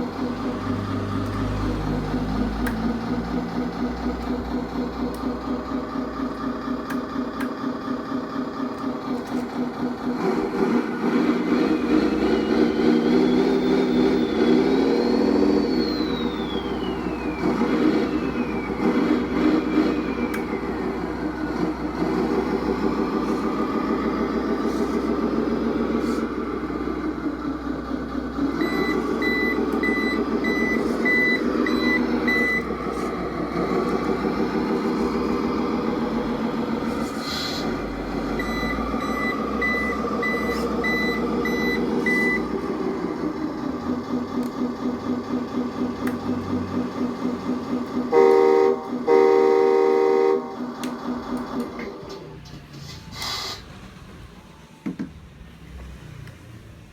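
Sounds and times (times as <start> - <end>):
simulated truck engine from speaker: 0.0 - 56.9
pulsed reversing beep: 11.3 - 26.2, 28.5 - 42.6.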